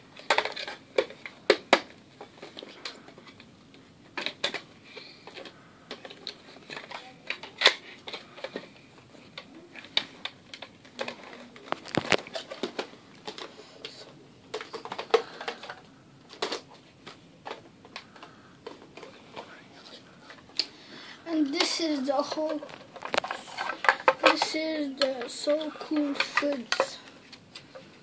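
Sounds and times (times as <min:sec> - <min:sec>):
plastic toy pieces clicking: 0:00.2 - 0:01.9, 0:21.6 - 0:27.7.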